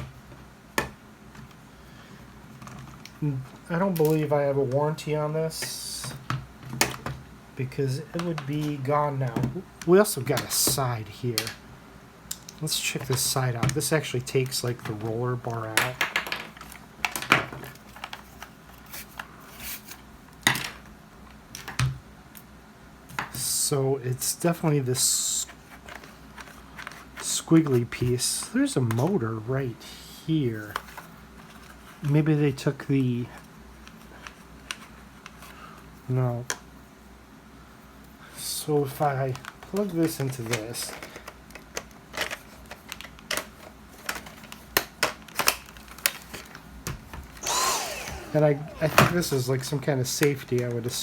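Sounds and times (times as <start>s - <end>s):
plastic parts clicking and knocking: 14.7s - 18.5s, 39.3s - 49.4s
vacuum roller parts clicking: 47.2s - 50.8s.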